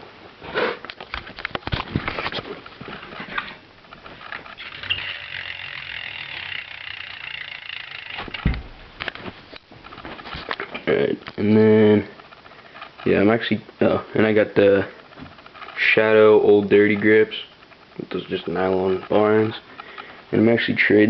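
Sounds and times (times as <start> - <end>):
freewheeling hub buzz: 4.1 - 8.9
bike hub ratchet clicks: 4.6 - 8.4
thump: 8.4 - 8.8.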